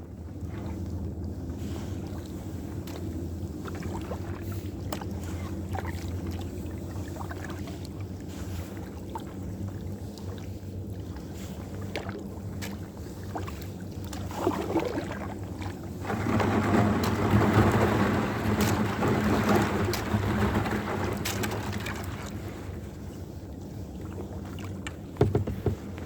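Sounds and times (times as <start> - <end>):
water sloshing around kayak: 0.0 - 26.0
rush of water: 11.4 - 23.1.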